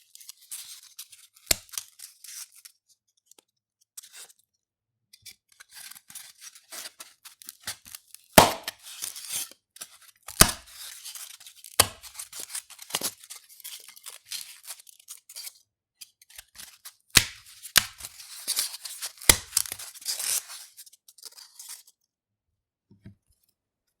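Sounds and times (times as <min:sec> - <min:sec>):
foam snapping cracks: 0:08.4 - 0:08.8, 0:19.2 - 0:19.8.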